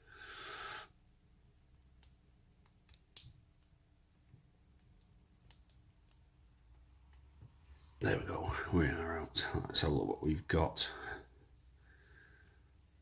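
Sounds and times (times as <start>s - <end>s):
small metallic clicks: 4.7s - 6.3s.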